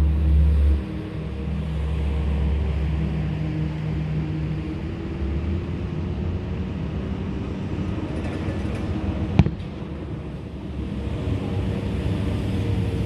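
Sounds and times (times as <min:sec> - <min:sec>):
low mechanical hum: 0:00.0 - 0:03.9.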